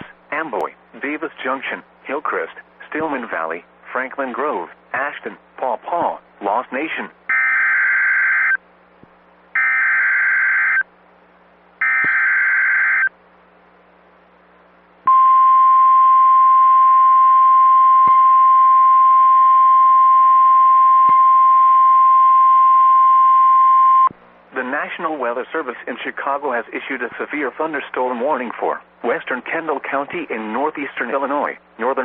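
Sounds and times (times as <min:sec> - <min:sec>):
steady attention tone: 0:11.8 - 0:13.9, 0:15.0 - 0:24.1.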